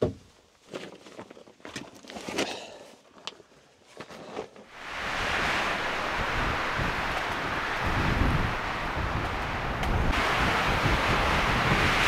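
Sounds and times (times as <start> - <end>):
steady rush of wind: 4.7 - 12.0.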